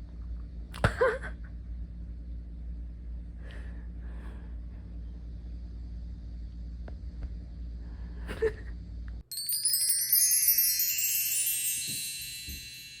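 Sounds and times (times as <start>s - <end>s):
steady low hum: 0.0s - 11.6s
shimmering chime flourish: 9.3s - 13.0s.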